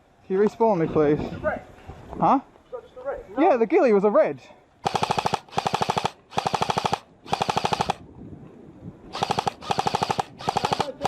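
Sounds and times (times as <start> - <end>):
airsoft rifle bursts: 4.8 - 8.0, 9.1 - 11.0.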